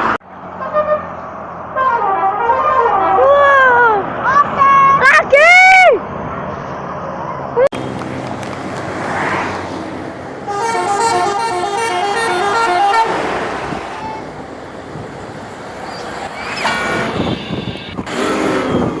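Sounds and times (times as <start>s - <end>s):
vehicle passing: 0.0s - 19.0s
bus musical horn: 0.6s - 1.1s, 1.8s - 3.5s, 10.4s - 14.3s.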